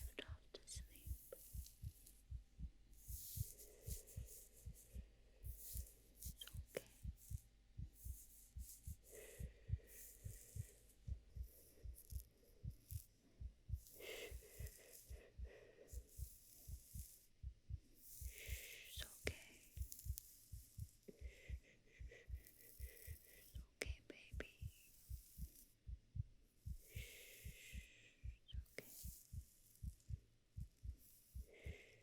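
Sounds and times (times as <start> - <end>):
heartbeat thumps: 0.0 - 32.0.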